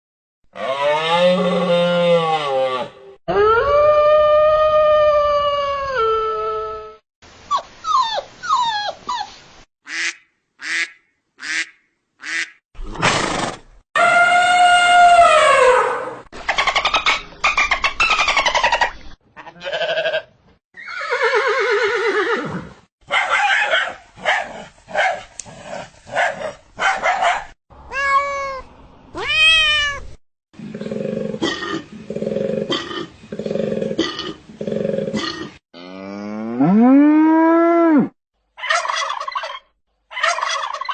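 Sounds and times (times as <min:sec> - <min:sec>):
girl imitating animal calls: 0:27.9 - 0:28.6.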